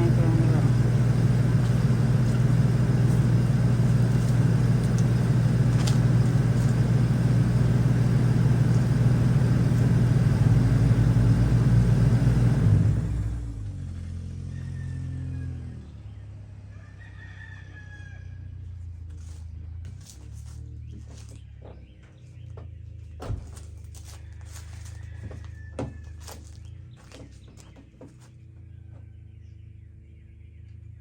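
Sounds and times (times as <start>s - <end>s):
loud mechanical rumble: 0.0s - 16.7s, 18.5s - 31.0s
rooster crowing: 14.4s - 15.8s, 16.6s - 18.6s, 24.0s - 26.6s.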